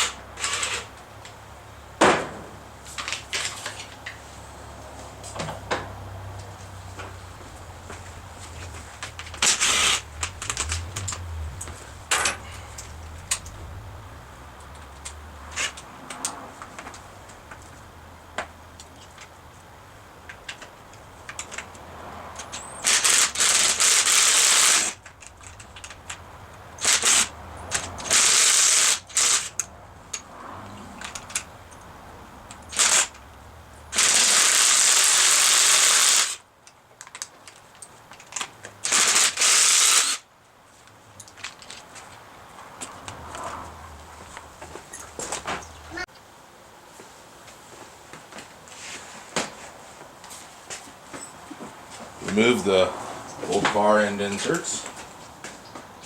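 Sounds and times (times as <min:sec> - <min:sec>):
hand tools clicking and clattering: 0:06.4 - 0:19.4, 0:20.2 - 0:30.3, 0:31.0 - 0:31.9
loud hissing bursts: 0:08.4 - 0:14.4, 0:33.9 - 0:36.4.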